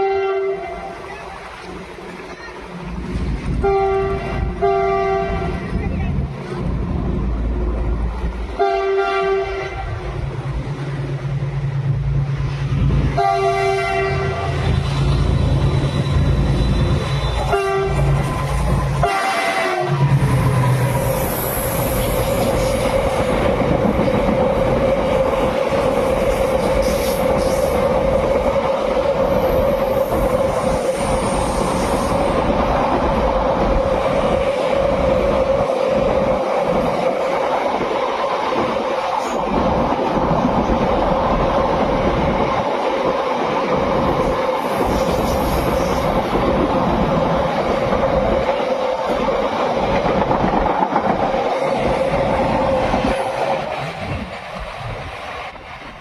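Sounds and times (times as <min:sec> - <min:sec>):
locomotive horn blasts: 0:00.0 - 0:00.9, 0:03.6 - 0:05.6, 0:08.6 - 0:09.9, 0:13.2 - 0:14.6, 0:16.6 - 0:18.1, 0:19.0 - 0:20.0
train wheels rumbling on rails: 0:00.0 - 0:56.0.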